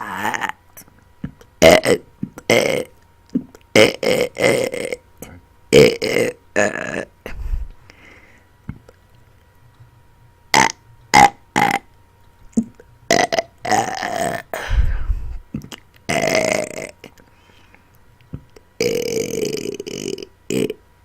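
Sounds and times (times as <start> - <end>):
woman burping: 0.0 - 0.6, 1.6 - 5.0, 5.7 - 7.1, 13.1 - 14.7, 15.6 - 17.2, 18.8 - 20.8.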